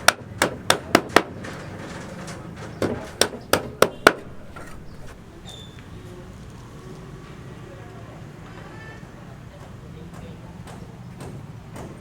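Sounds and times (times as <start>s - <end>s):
sharp knocks: 2.8s - 5.6s.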